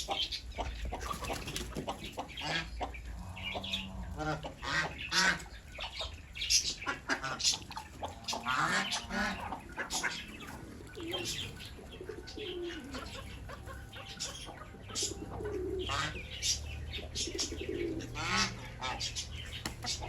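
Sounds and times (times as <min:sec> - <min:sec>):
birds chirping: 0:00.0 - 0:20.0
pigeons cooing: 0:00.0 - 0:20.0.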